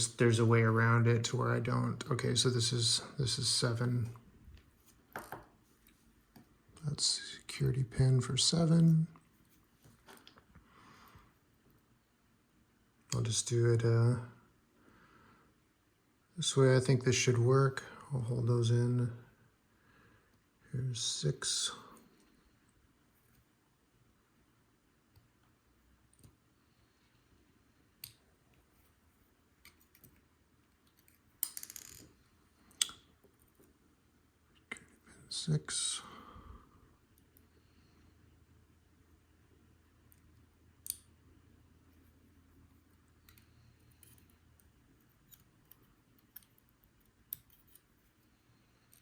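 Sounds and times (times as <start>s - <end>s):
padlock pins clicking: 43.2s - 48.1s.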